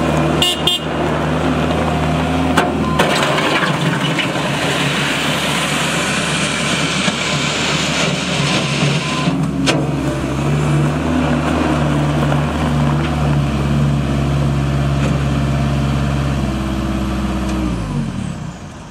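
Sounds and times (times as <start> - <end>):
loud rushing noise: 0.0 - 12.8
diesel engine running: 0.0 - 18.9.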